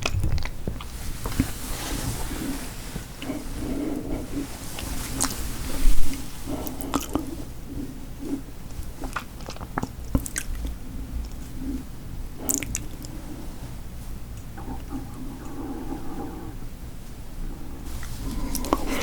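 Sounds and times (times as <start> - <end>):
chewing food: 0.0 - 1.7, 3.2 - 13.2, 18.0 - 19.0
wet mouth clicks and smacks: 9.0 - 11.6, 12.4 - 13.1.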